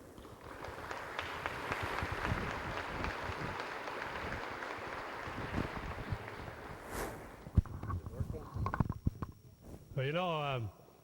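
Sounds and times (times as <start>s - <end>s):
audience applauding: 0.0s - 6.9s.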